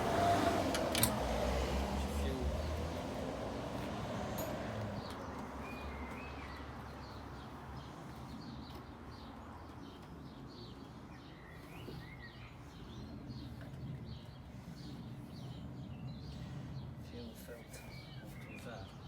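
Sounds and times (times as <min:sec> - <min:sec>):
small birds chirping: 0:04.8 - 0:19.0.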